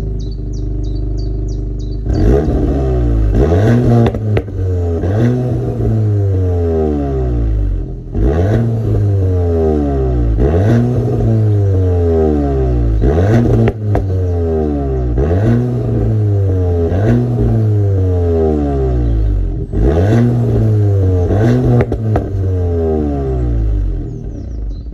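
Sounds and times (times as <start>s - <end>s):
car engine revving: 0.0s - 24.9s
exhaust pops and cracks: 3.7s - 4.7s, 13.4s - 14.2s, 21.5s - 22.5s.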